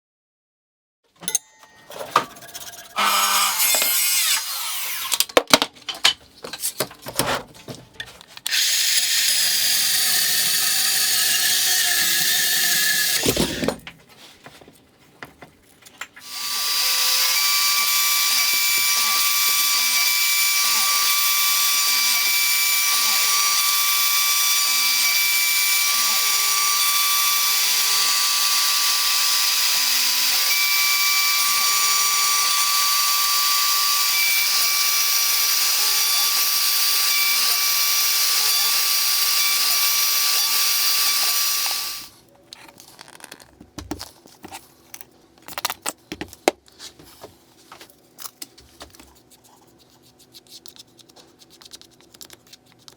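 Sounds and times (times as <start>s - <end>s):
router spindle cutting wood: 2.2s - 5.2s, 8.5s - 13.8s, 16.2s - 42.1s.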